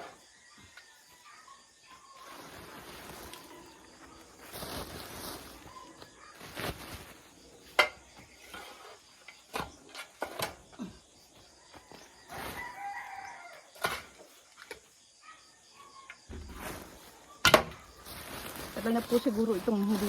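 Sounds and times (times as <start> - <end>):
tools knocking and scraping: 7.6 - 10.7
rooster crowing: 11.5 - 13.8.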